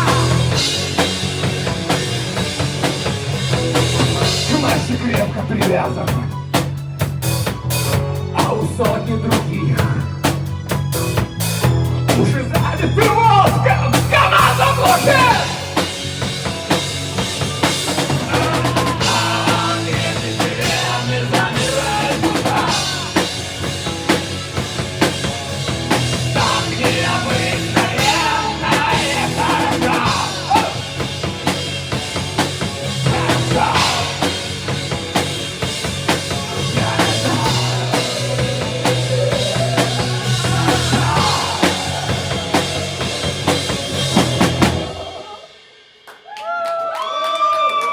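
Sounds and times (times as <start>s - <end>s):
bass drum and snare beat: 0.0s - 9.6s, 10.2s - 45.0s
band playing live: 0.0s - 46.0s.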